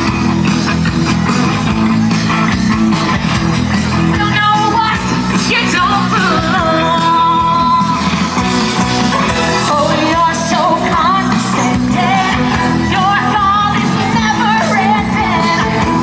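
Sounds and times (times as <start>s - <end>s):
rock music with electric guitar: 0.0s - 16.0s
person singing: 4.2s - 8.5s, 9.3s - 16.0s.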